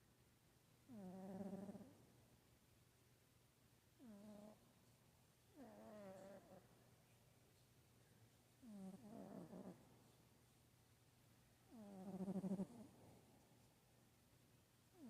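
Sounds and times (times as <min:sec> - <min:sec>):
cat snoring: 0:00.9 - 0:02.0, 0:04.0 - 0:04.6, 0:05.6 - 0:06.6, 0:08.6 - 0:09.8, 0:11.7 - 0:12.9.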